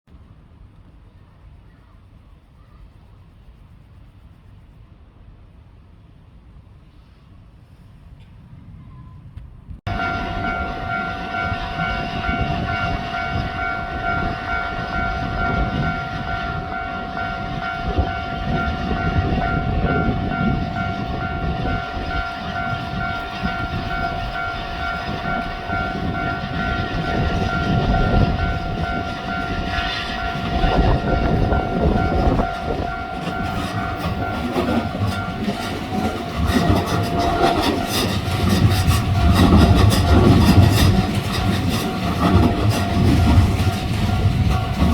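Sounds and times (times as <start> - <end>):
level-crossing warning bell: 9.9 - 44.9
train wheels clattering over rails: 9.9 - 44.9.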